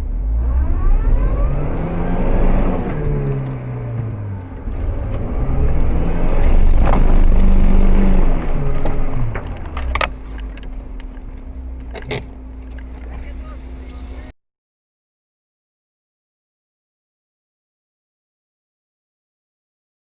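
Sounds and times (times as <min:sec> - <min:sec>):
car engine revving under load: 0:00.0 - 0:14.3.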